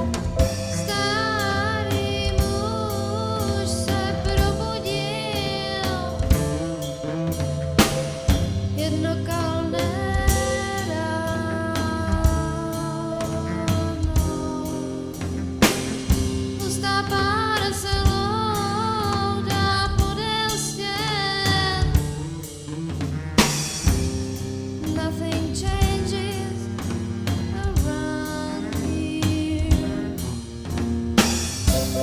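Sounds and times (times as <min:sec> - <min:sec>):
wavering lead melody: 0:00.0 - 0:19.5, 0:31.7 - 0:32.0
drum kit beat: 0:00.0 - 0:32.0
guitar backing: 0:00.0 - 0:32.0.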